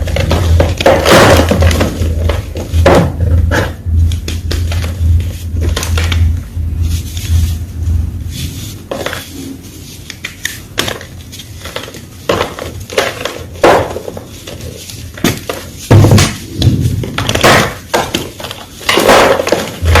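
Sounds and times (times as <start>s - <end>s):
low hum: 0.0s - 12.9s, 19.7s - 20.0s.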